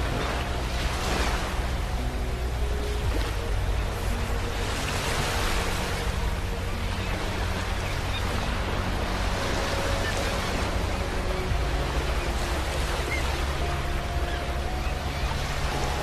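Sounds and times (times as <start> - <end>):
sea waves breaking on beach: 0.0 - 16.0.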